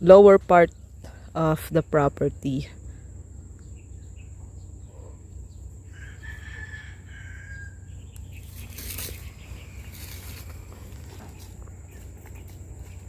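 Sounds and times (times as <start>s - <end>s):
steady low rumble: 0.0s - 6.2s, 7.7s - 13.0s
rooster crowing: 5.9s - 8.0s.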